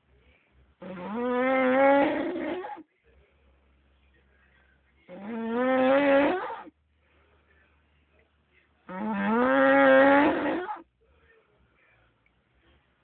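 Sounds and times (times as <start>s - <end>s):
man snoring heavily: 0.8s - 2.8s, 5.1s - 6.7s, 8.9s - 10.8s.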